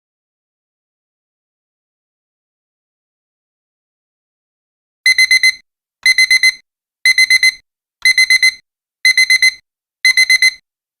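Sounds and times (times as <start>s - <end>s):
digital alarm clock beeping: 5.1s - 10.6s.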